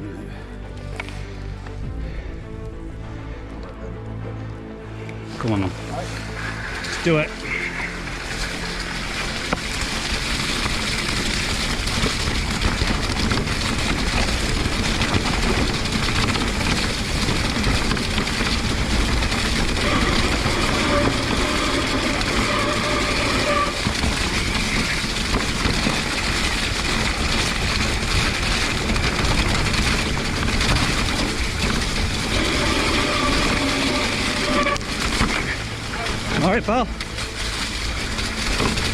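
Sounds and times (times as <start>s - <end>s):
rattling tyre and trail noise: 0.0s - 38.9s
wind buffeting: 6.3s - 36.4s.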